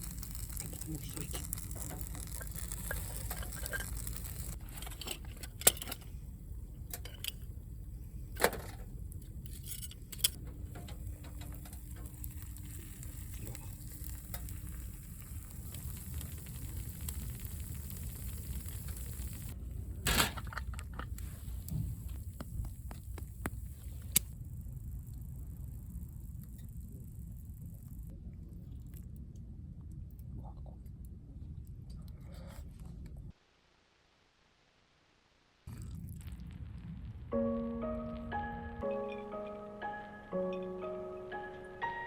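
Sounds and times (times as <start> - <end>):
food sizzling in a pan: 0.0 - 4.6, 11.5 - 19.6.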